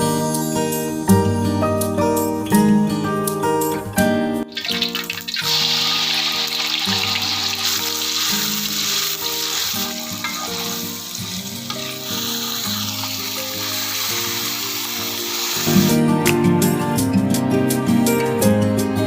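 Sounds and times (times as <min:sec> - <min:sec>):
gentle background music: 0:00.0 - 0:19.0
food sizzling in hot oil: 0:04.5 - 0:16.0.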